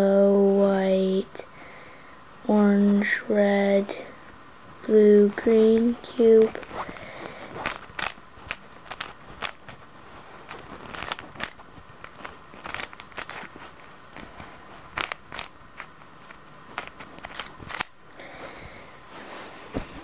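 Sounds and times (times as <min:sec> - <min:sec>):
speed cube layers clicking: 0:07.6 - 0:09.7, 0:10.5 - 0:17.9.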